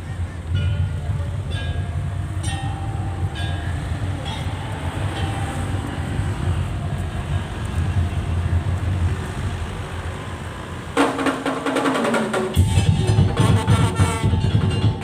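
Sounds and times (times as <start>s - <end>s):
steady low rumble: 0.0s - 10.7s
wooden percussion music: 11.0s - 15.0s
heavy bass beat: 12.3s - 15.0s.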